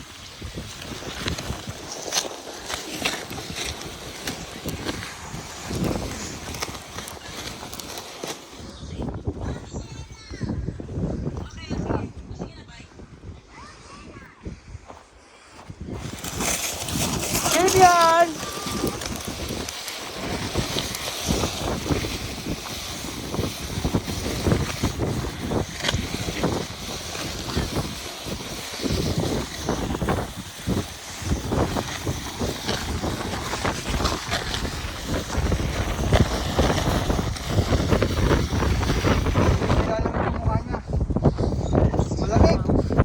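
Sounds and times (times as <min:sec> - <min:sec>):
brief rustles and crunches: 0:00.0 - 0:09.2, 0:15.6 - 0:39.9
wind buffeting microphone: 0:00.0 - 0:43.0.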